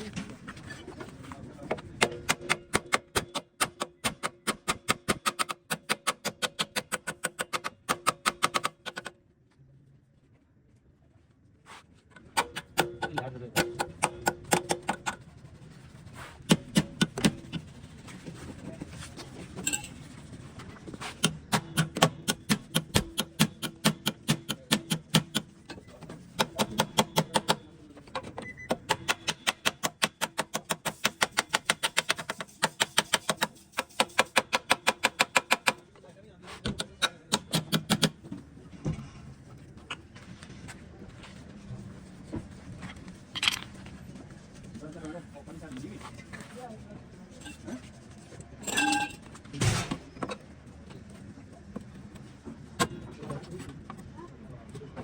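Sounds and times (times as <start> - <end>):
hammer tapping sheet metal: 1.9 - 9.1, 12.3 - 15.2, 16.4 - 17.7, 21.2 - 25.6, 26.3 - 27.7, 28.7 - 35.9, 36.7 - 38.2.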